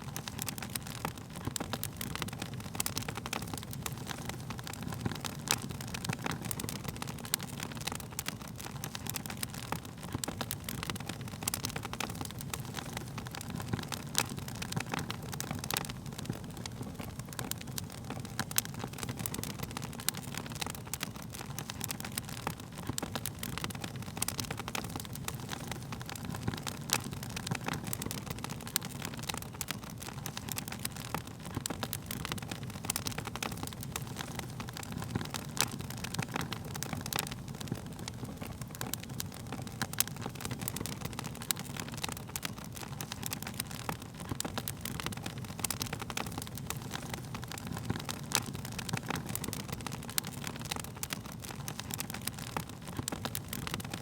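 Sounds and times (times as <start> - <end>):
burning wood crackling: 0.0 - 54.0
low fire rumble: 0.0 - 54.0.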